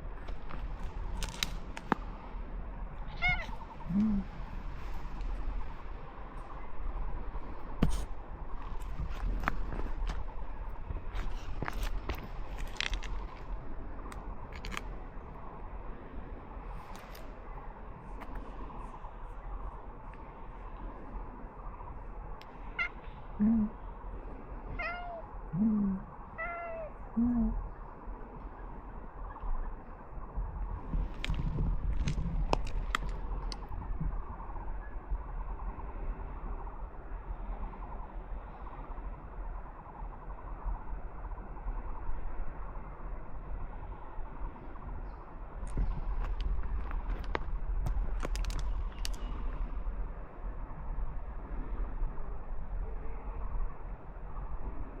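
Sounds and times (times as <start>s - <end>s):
low background noise: 0.0s - 55.0s
cat meowing: 3.1s - 4.0s, 24.8s - 25.2s, 26.4s - 26.9s.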